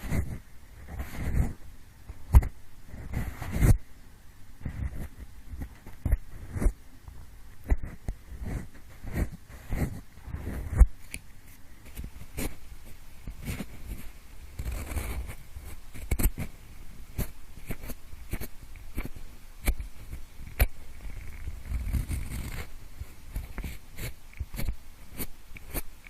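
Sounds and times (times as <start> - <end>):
pencil tapping and scraping: 0.0 - 3.8, 4.6 - 26.0.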